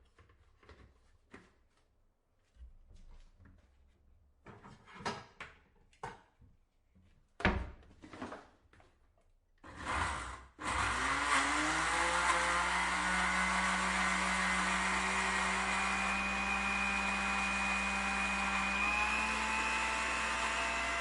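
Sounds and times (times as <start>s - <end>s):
blender motor running: 9.7s - 21.0s.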